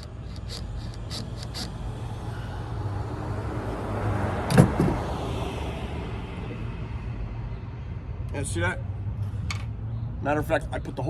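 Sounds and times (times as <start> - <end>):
scraping: 0.0 - 1.8.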